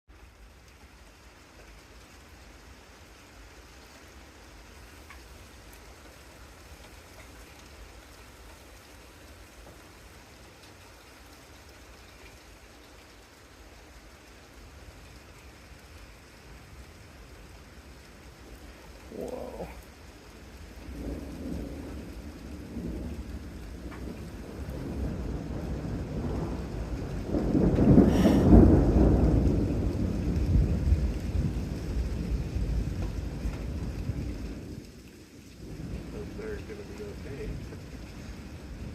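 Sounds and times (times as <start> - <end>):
steady rain falling: 0.1 - 38.9
thunder rumbling: 17.8 - 38.9.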